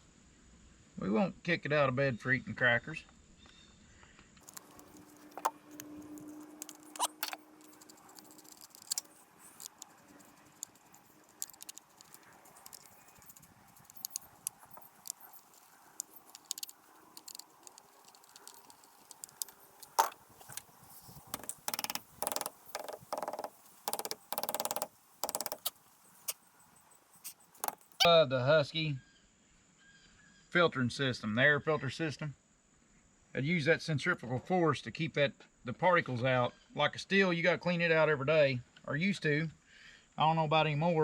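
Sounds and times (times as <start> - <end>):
metallic rattles of tools: 4.4 - 26.4.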